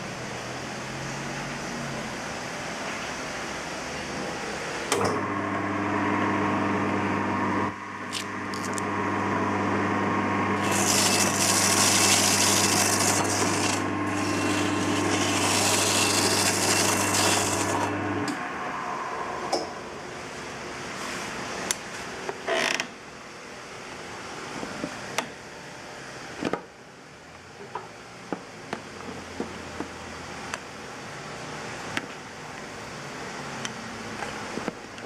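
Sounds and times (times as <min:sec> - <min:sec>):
grinder motor humming: 0:05.2 - 0:18.4
harsh rasping of shredding: 0:10.6 - 0:18.1.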